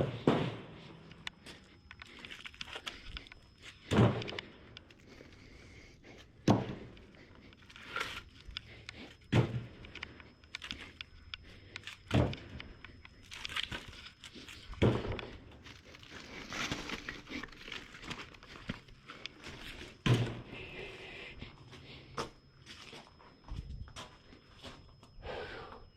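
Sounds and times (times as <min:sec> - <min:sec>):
heavy wooden thunks: 0:00.0 - 0:00.8, 0:03.9 - 0:04.4
wood crackling and rustling: 0:01.2 - 0:05.5, 0:06.5 - 0:20.3.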